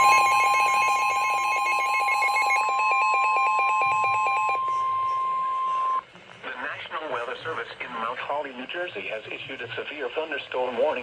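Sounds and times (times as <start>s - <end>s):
steady alarm tone: 0.0s - 6.0s.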